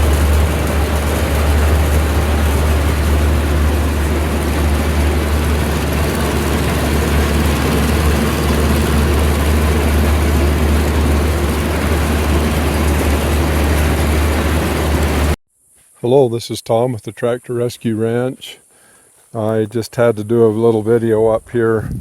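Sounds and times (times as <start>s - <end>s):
farm machine engine running: 0.0s - 15.4s.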